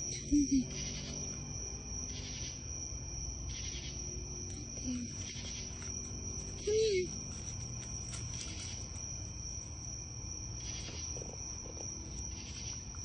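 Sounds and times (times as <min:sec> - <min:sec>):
insect trilling: 0:00.0 - 0:13.0.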